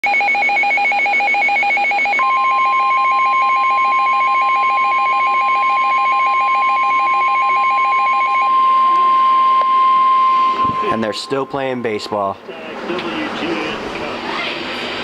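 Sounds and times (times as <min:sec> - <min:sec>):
pulsing two-pitch alert tone: 0:00.1 - 0:12.4
steady single tone: 0:07.8 - 0:12.7.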